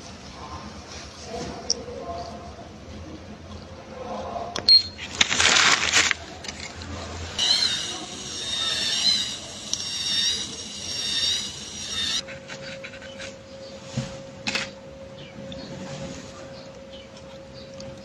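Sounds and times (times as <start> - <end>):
dental drill whining: 7.4 - 12.2.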